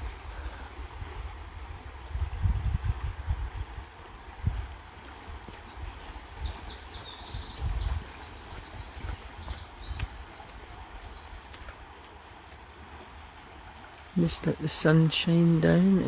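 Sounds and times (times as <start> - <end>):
songbirds singing trills: 0.0 - 1.6, 5.0 - 12.8
fast-flowing river rushing: 0.0 - 16.0.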